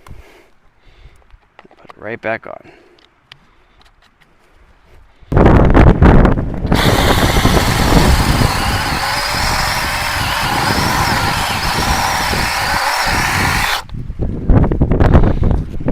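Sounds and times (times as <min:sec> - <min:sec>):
electric chainsaw whining: 0:06.7 - 0:13.9.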